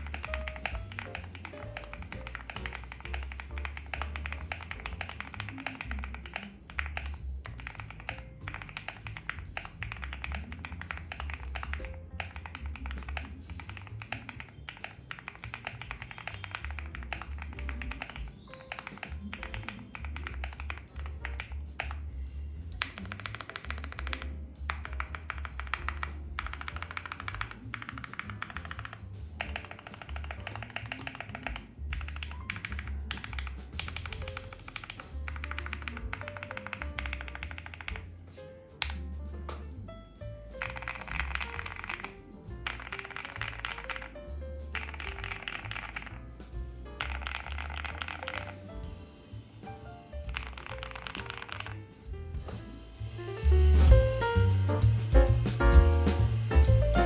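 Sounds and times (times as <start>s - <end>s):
mechanical keyboard typing: 0.0s - 22.0s, 22.8s - 38.1s, 40.6s - 46.3s, 47.0s - 48.8s, 50.2s - 52.0s
background music with bass beat: 0.0s - 30.6s, 48.4s - 57.0s.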